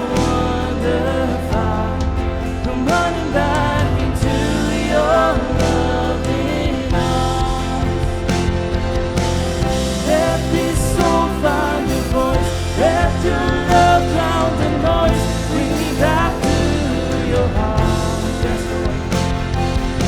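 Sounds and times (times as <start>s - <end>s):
band playing chords and bass: 0.0s - 20.0s
person singing: 0.0s - 20.0s.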